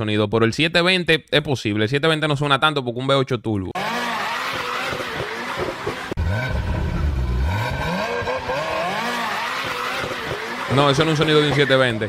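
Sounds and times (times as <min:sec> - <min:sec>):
car engine revving: 0:03.8 - 0:12.0.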